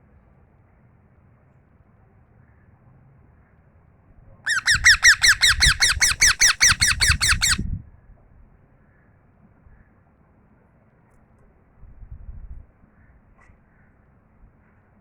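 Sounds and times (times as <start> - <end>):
parrot harsh calls: 4.5 - 7.6.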